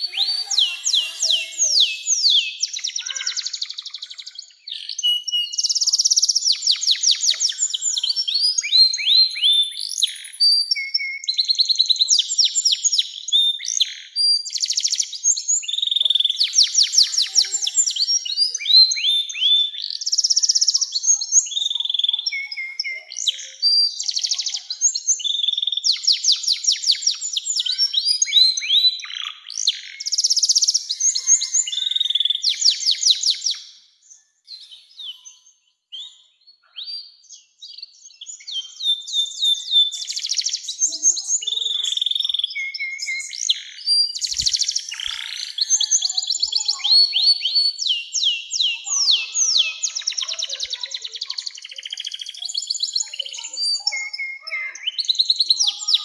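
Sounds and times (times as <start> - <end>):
canary singing trills: 0.0 - 56.0.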